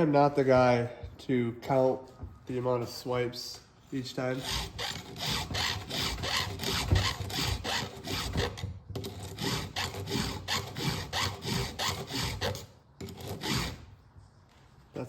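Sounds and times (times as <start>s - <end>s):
file rasping on saw chain: 4.2s - 13.9s.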